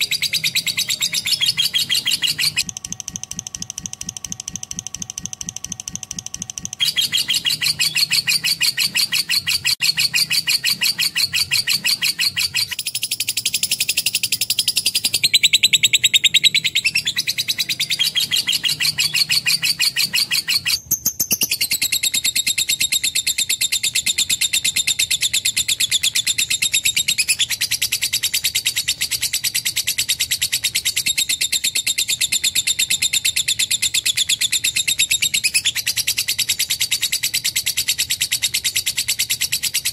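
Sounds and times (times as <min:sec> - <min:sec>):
lovebird chirping and chattering: 0:00.0 - 0:39.9.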